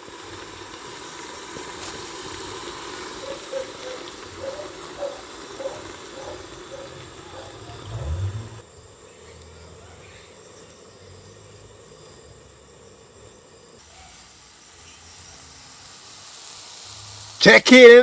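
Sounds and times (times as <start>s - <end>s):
vegetables sizzling in oil: 0.0s - 18.0s
low thump: 7.8s - 8.6s.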